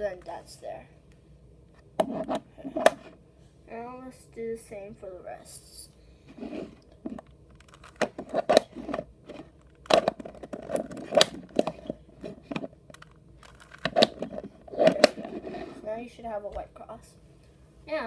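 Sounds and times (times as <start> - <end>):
puzzle cube plastic clicks: 7.1 - 15.8.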